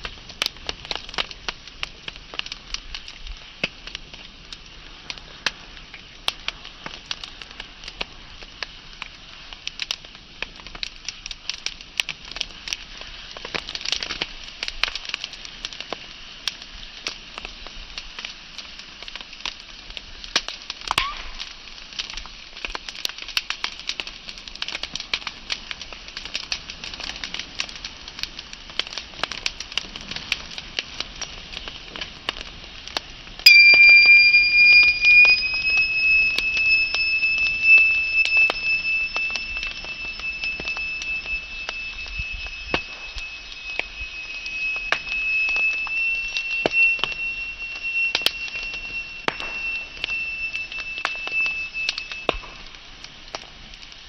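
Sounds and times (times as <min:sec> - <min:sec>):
wood fire crackling: 0:00.0 - 0:54.0
loud high steady tone: 0:33.5 - 0:52.3.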